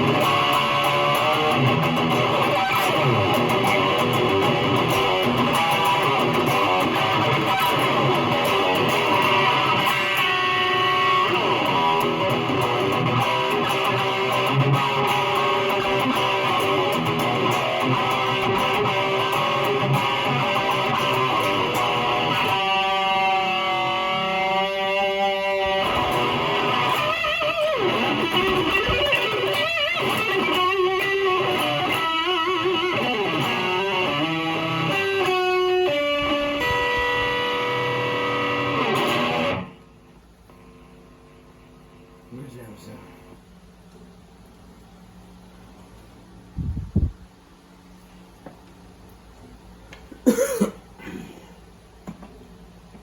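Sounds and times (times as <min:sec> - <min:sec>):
electric guitar strumming: 0:00.0 - 0:39.8.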